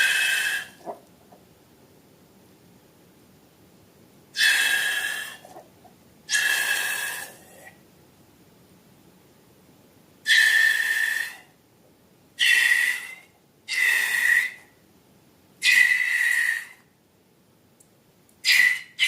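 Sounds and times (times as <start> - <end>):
air squealing from balloon neck: 0.0 - 1.0, 4.4 - 5.6, 6.3 - 7.4, 12.4 - 14.6, 18.5 - 19.0.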